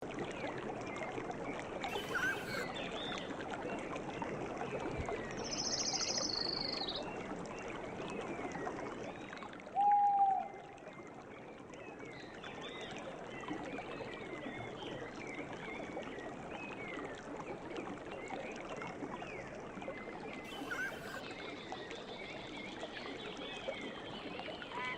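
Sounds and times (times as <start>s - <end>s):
river water flowing: 0.1s - 9.8s, 12.2s - 24.9s
short low bird call: 1.9s - 2.7s, 20.5s - 21.2s
birds chirping: 1.9s - 2.8s, 20.5s - 21.2s.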